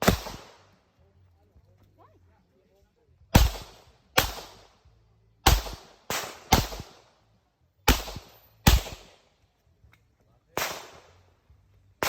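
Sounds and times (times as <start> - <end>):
pistol shots: 0.0 - 0.8, 3.4 - 4.8, 5.4 - 7.1, 7.9 - 9.3, 10.6 - 11.2.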